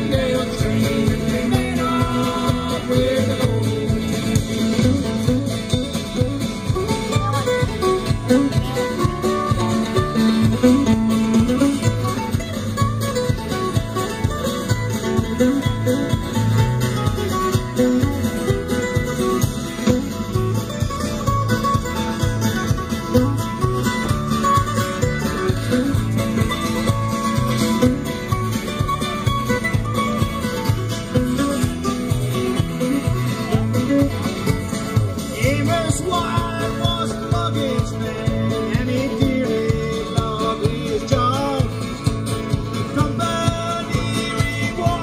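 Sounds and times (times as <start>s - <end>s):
live country band: 0.0s - 45.0s
plucked guitar strings: 0.0s - 45.0s.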